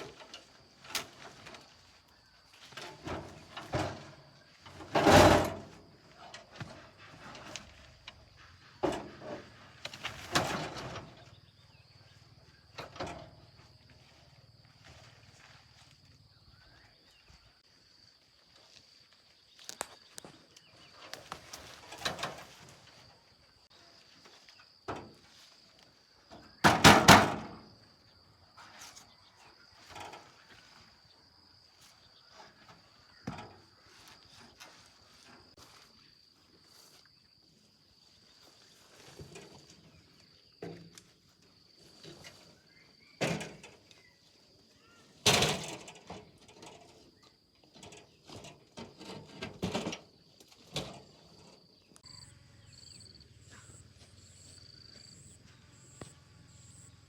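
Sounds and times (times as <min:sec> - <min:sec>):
knocks thuds and scraping: 0:02.7 - 0:11.4, 0:26.3 - 0:27.7, 0:32.4 - 0:35.5.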